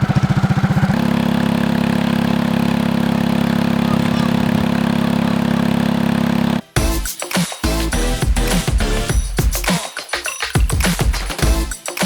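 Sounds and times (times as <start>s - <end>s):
small gas engine drone: 0.0s - 7.0s.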